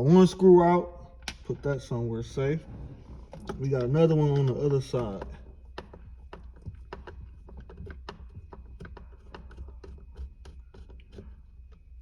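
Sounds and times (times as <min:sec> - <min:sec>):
low hum: 0:00.0 - 0:12.0
screwdriver clicking and tapping: 0:04.3 - 0:11.4.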